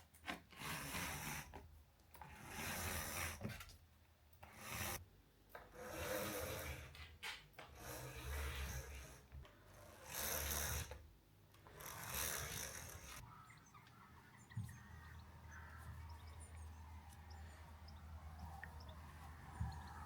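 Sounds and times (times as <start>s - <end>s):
faint birds chirping: 11.9s - 20.0s.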